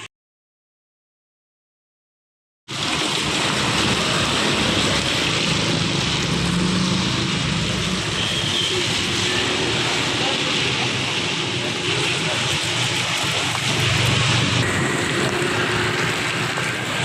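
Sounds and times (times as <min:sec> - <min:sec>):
steady rushing noise: 0:02.9 - 0:17.0.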